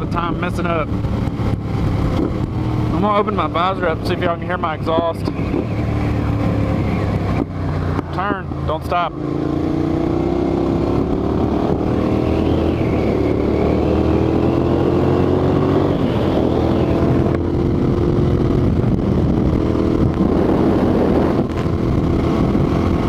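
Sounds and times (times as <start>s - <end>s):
motorcycle engine under way: 0.0s - 23.0s
wind rushing past: 9.2s - 23.0s.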